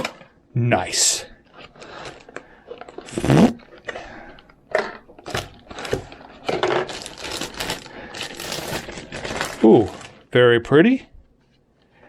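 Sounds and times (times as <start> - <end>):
packaging rustling and clicking: 1.5 - 10.3.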